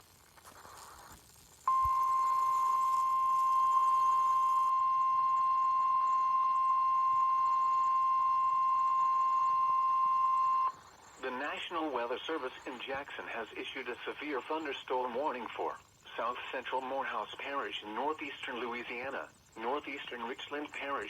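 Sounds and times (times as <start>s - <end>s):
steady high alarm tone: 1.7s - 12.6s.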